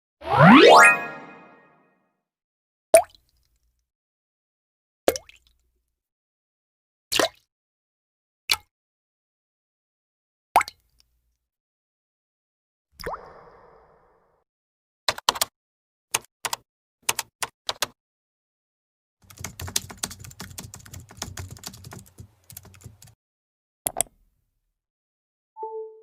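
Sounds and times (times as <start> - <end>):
keyboard typing: 16.1 - 18.0, 19.2 - 23.2.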